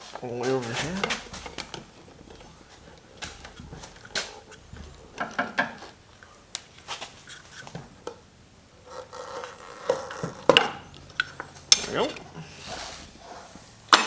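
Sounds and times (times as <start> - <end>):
tools and parts clattering: 0.0 - 14.0
short scrape: 11.9 - 13.7.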